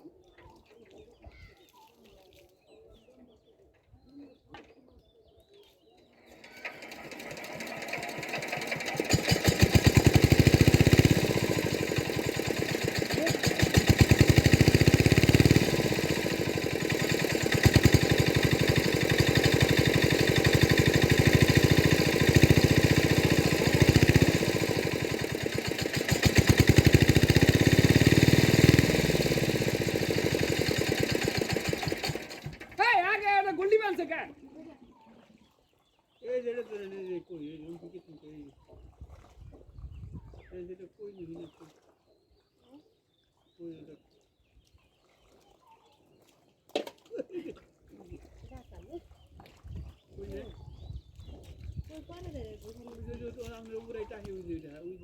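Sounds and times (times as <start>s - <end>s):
small engine running: 6.2s - 33.4s.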